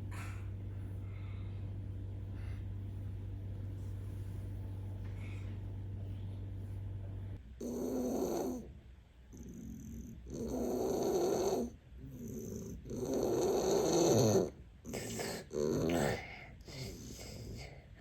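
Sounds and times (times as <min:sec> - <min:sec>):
child snoring: 0:07.6 - 0:08.7, 0:09.4 - 0:17.8.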